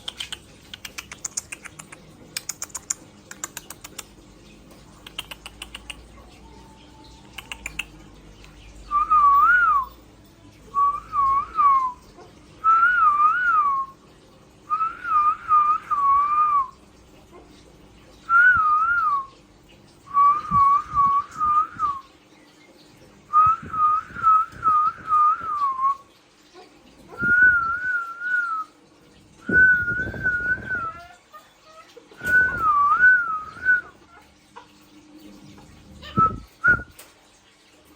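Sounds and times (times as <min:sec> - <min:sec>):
warbling whistles: 0:27.2 - 0:28.8, 0:29.4 - 0:31.2, 0:32.2 - 0:34.1, 0:36.0 - 0:37.0.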